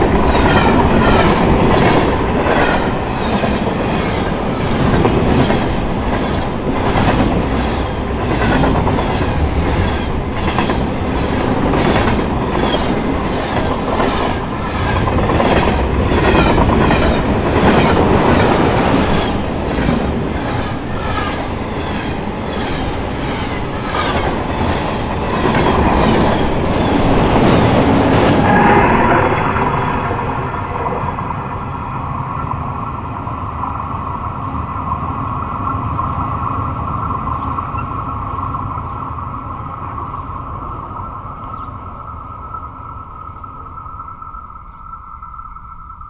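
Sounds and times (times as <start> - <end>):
train wheels clacking over rail joints: 0.0 - 28.6
train rumble: 0.0 - 46.0.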